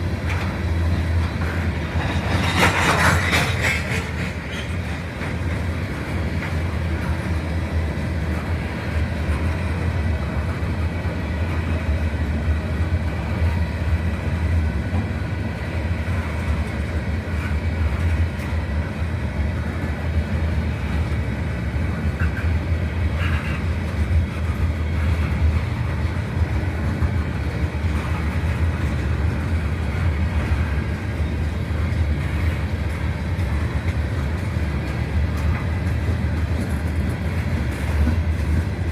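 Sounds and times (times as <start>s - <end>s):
train wheels rumbling on rail: 0.0s - 38.9s.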